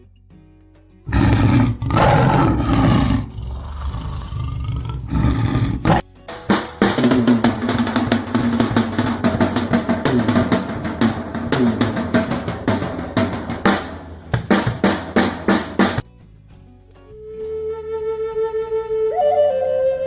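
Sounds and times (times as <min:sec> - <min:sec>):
loud fast drum hits: 0:05.2 - 0:16.0.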